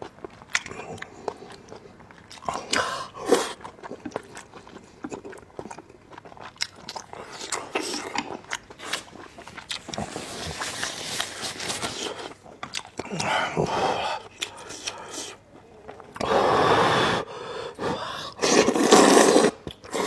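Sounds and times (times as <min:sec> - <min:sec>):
person biting and chewing noodles: 0:00.0 - 0:13.4, 0:18.4 - 0:20.0.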